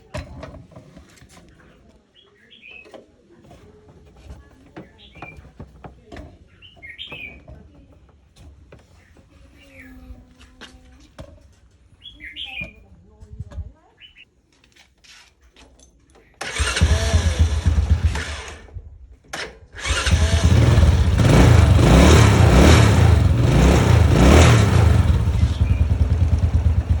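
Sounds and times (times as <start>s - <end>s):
small engine starting and running: 16.4s - 18.8s, 19.4s - 27.0s.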